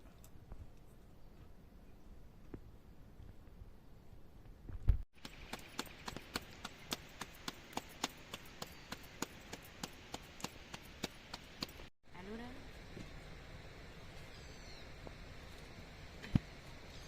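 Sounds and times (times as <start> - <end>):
blade chopping on wood: 5.2 - 11.9.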